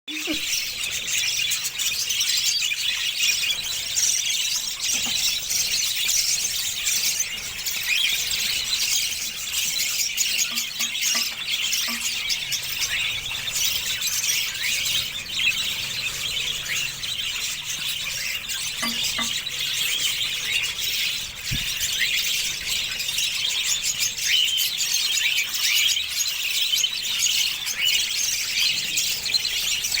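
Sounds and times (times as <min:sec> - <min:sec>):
chicks chirping and squeaking: 0:00.1 - 0:30.0.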